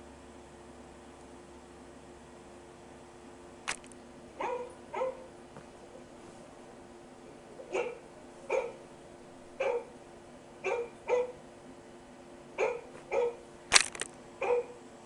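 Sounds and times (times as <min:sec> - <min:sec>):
dog barking sharply: 0:04.4 - 0:05.3, 0:07.7 - 0:08.8, 0:09.6 - 0:10.0, 0:10.6 - 0:11.4, 0:12.6 - 0:13.4, 0:14.4 - 0:14.8.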